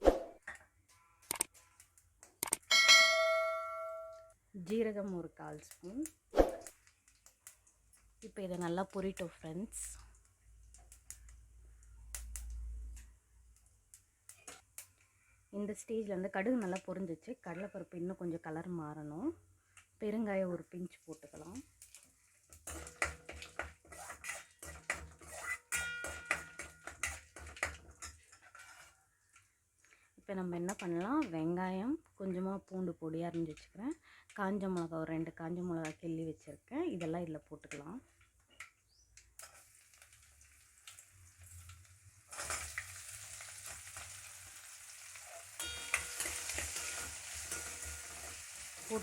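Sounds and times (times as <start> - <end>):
metallic ring: 2.7 - 4.3, 25.7 - 26.6, 45.6 - 48.0
food sizzling in hot oil: 4.6 - 29.4, 39.3 - 49.0
metal spoon scraping iron pan: 22.5 - 29.1, 42.3 - 42.8, 45.6 - 49.0.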